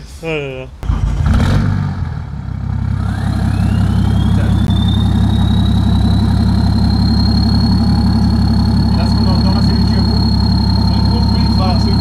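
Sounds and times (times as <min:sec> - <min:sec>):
diesel car engine idling: 0:02.1 - 0:12.0
turbo whistle: 0:03.0 - 0:12.0.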